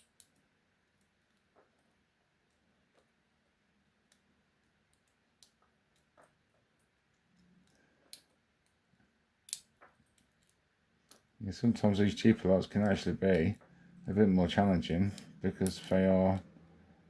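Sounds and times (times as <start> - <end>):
lock pick clicking and scraping: 9.5 - 11.3.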